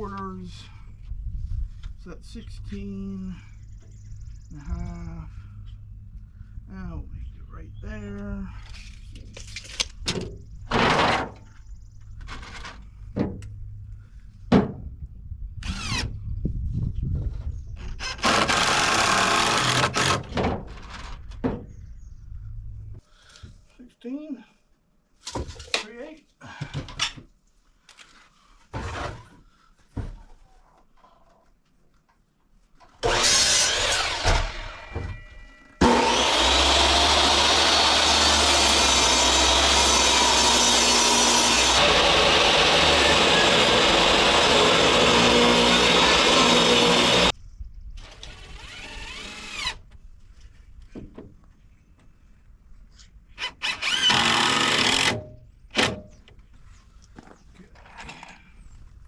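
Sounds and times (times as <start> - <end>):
power saw cutting wood: 18.1 - 20.2, 33.0 - 35.0, 35.8 - 47.3, 48.2 - 49.8, 53.4 - 55.2
wood scraping: 33.0 - 35.0, 35.8 - 47.3.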